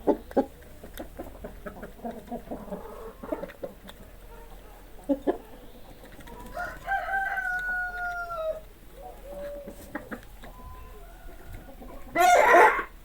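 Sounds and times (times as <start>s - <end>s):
chickens calling: 0.0s - 13.0s
chicken harsh squawk: 12.1s - 13.0s.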